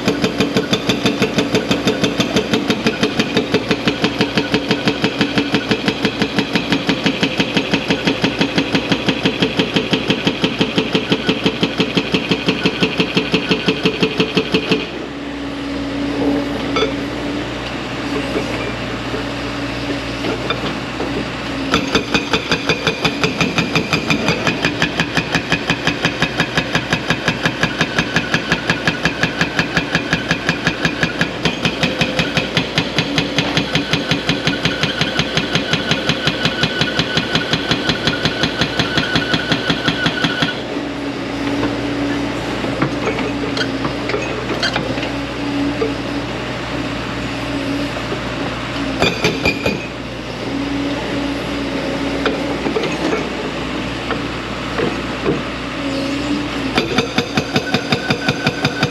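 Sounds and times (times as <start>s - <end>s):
hydraulic breaker hammering rock: 0.0s - 15.0s, 20.2s - 40.6s, 49.0s - 50.0s, 56.7s - 58.9s
excavator engine running: 0.0s - 58.9s.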